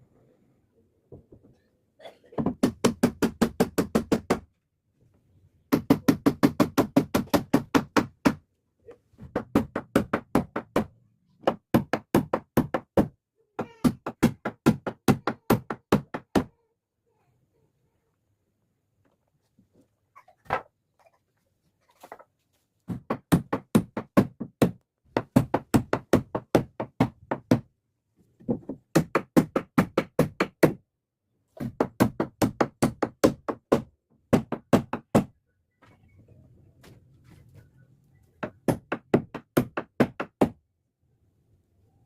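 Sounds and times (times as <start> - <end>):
hammering on wood: 2.4 - 4.5, 5.7 - 8.4, 9.2 - 16.5, 22.9 - 27.7, 28.4 - 30.8, 31.6 - 35.4, 38.4 - 40.6.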